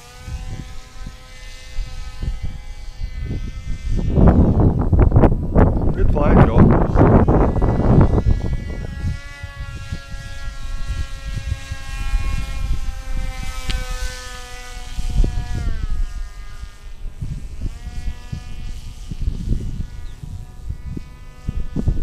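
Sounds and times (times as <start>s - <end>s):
model plane propeller whining: 0.0s - 22.0s
wind buffeting microphone: 0.0s - 22.0s.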